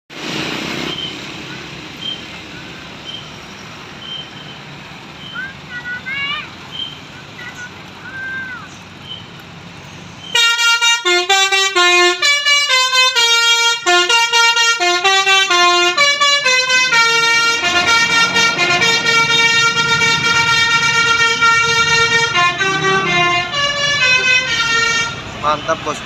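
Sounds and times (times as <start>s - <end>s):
musical bus air horn melody: 10.3s - 25.3s.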